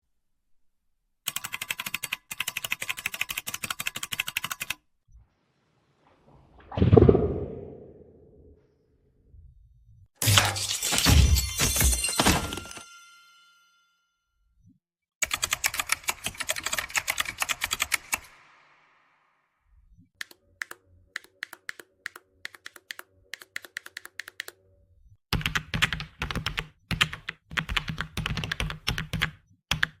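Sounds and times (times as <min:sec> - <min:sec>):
mechanical keyboard typing: 0:01.3 - 0:04.8, 0:15.2 - 0:18.3, 0:20.2 - 0:24.6, 0:25.3 - 0:30.0
rising whoosh: 0:06.0 - 0:08.6.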